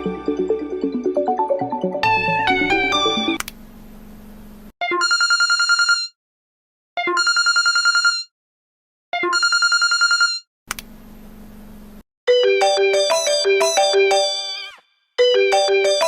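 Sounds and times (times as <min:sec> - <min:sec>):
telephone ringtone trilling: 0:04.8 - 0:06.2, 0:07.0 - 0:08.3, 0:09.2 - 0:10.5, 0:12.3 - 0:16.0.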